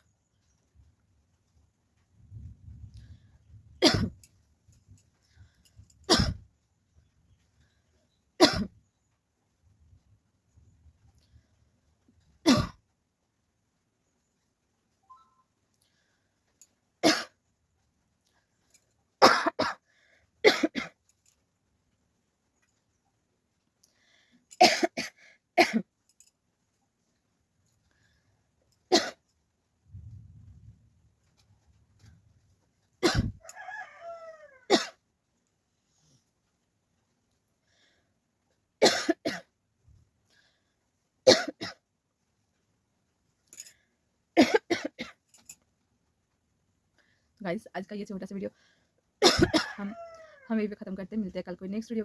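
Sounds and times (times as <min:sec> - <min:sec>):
person coughing: 0:03.8 - 0:04.2, 0:06.1 - 0:06.4, 0:08.4 - 0:08.7, 0:12.5 - 0:12.8, 0:19.2 - 0:19.8, 0:33.0 - 0:33.4, 0:38.8 - 0:39.5, 0:44.4 - 0:45.2, 0:49.2 - 0:49.9.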